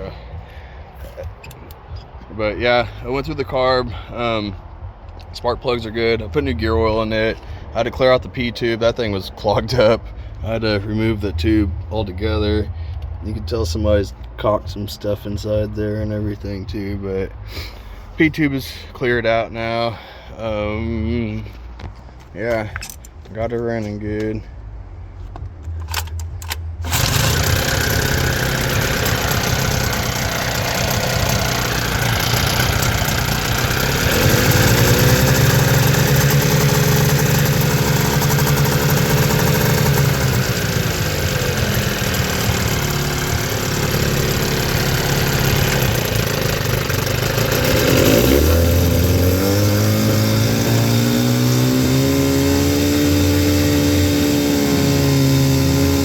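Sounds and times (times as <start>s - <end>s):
outboard motor revving: 26.8s - 56.0s.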